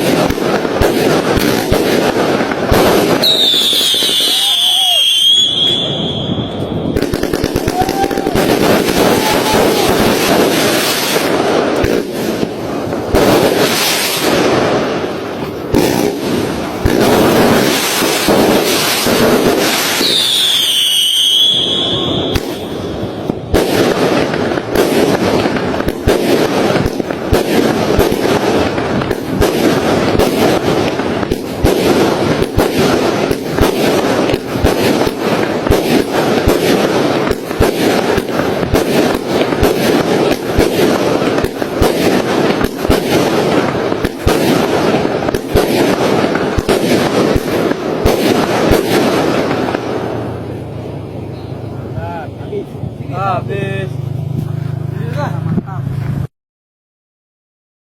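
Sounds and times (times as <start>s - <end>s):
whistling firework: 0.0s - 53.8s
fireworks bangs and crackles: 0.0s - 56.3s.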